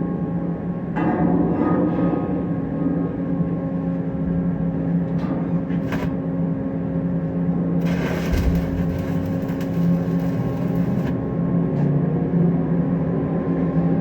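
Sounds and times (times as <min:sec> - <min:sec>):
welding equipment hum: 0:05.8 - 0:06.2, 0:07.8 - 0:11.8
crackling welding arc: 0:07.8 - 0:11.3.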